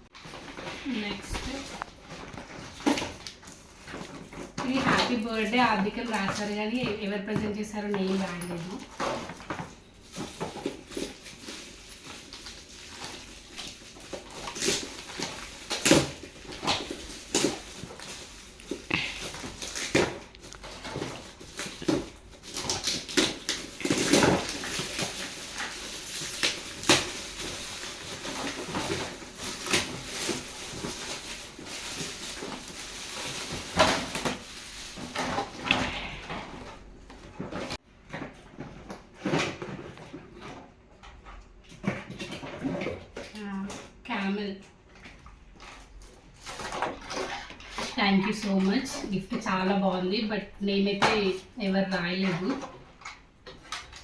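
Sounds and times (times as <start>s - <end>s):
wrapping paper tearing and crinkling: 0.2s - 6.9s, 8.2s - 37.8s, 45.7s - 49.4s.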